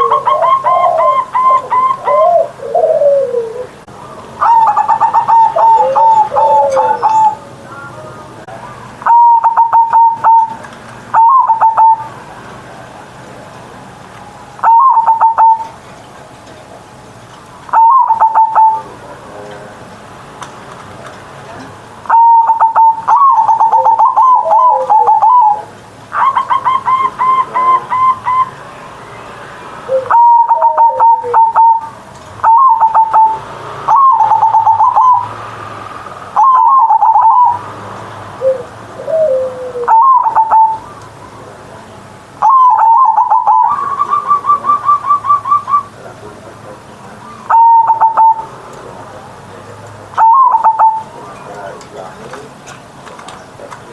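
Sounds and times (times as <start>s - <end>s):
dove cooing: 0.0s - 7.5s, 8.6s - 12.2s, 14.6s - 15.8s, 17.7s - 19.7s, 22.1s - 28.6s, 29.9s - 35.5s, 36.4s - 37.7s, 38.4s - 41.5s, 42.4s - 52.5s.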